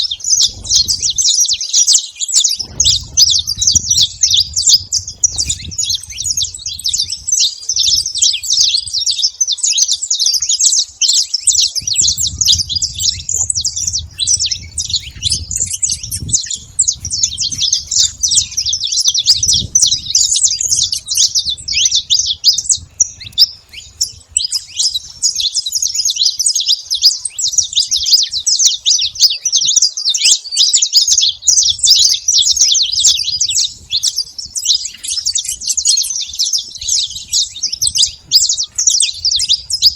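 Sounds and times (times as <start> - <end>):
flock of finches chirping: 0.0 - 39.9.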